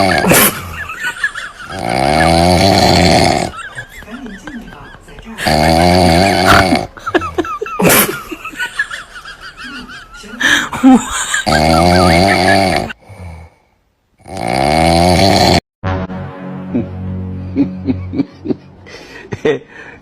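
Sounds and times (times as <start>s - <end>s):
loud snoring: 0.0s - 0.6s, 1.7s - 3.6s, 5.4s - 7.0s, 11.4s - 13.6s, 14.2s - 15.6s.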